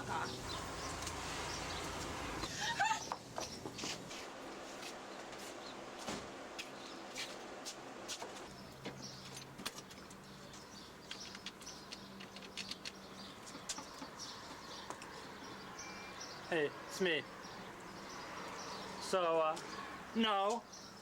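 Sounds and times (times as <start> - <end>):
birds chirping faintly: 8.5 - 21.0.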